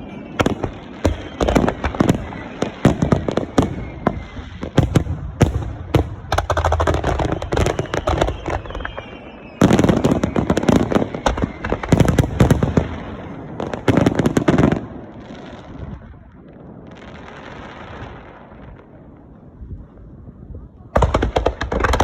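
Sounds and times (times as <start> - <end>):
fireworks bursting: 0.0 - 19.0, 21.0 - 22.0
fireworks crackling: 0.0 - 19.7, 21.0 - 22.0.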